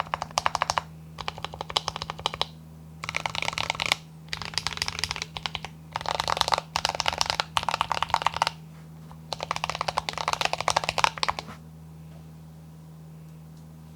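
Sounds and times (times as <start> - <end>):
typing on mechanical keyboard: 0.0 - 8.6, 9.3 - 11.5
steady low hum: 0.0 - 13.9.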